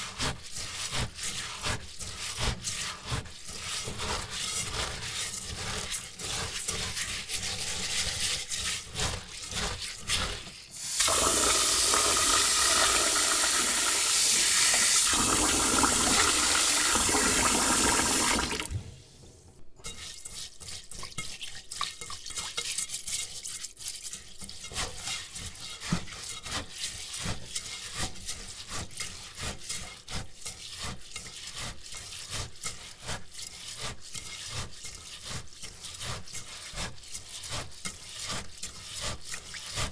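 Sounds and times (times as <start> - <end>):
rice scrubbed in a bowl: 0.0 - 19.2, 19.8 - 39.9
tap running into a bowl: 10.8 - 18.9.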